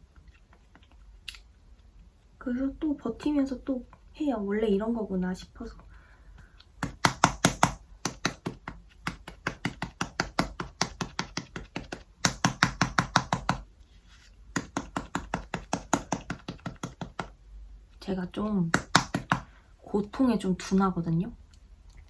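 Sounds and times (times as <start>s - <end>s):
makeup puff patting skin: 6.8s - 13.7s, 14.5s - 17.4s, 18.6s - 19.6s.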